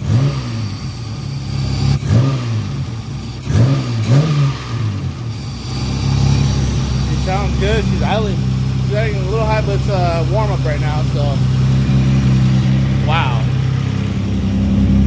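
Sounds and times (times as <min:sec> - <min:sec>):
car engine revving and idling: 0:00.0 - 0:15.0.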